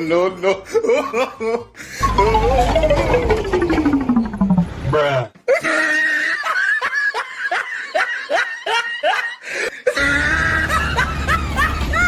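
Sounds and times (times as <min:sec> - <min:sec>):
high-pitched rapid laugh: 0:05.5 - 0:12.0.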